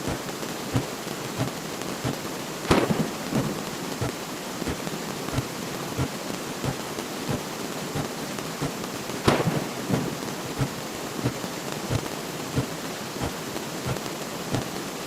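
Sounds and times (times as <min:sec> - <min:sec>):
hiss with crackles and pops: 0:00.0 - 0:15.0
loud crack: 0:02.6 - 0:05.6, 0:09.2 - 0:10.8.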